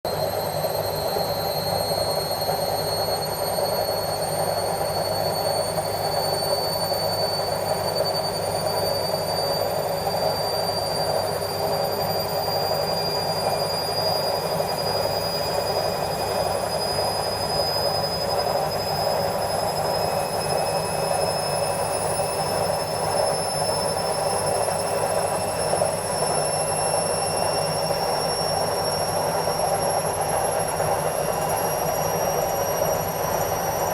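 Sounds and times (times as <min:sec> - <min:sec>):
drum motor high-pitched whine: 0:00.1 - 0:33.9
washing machine spin rumble: 0:00.1 - 0:33.9.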